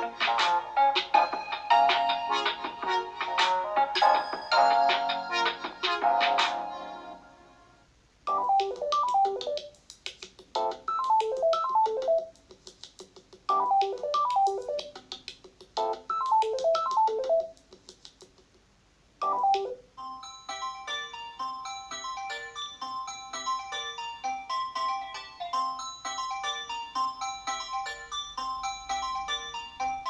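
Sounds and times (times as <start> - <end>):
ringtone melody: 0.0 - 7.3, 8.3 - 9.8, 10.6 - 12.4, 13.5 - 15.0, 15.8 - 17.6, 19.2 - 30.0
phone ringtone chiming notes: 4.0 - 7.2, 8.3 - 9.6, 19.2 - 30.0.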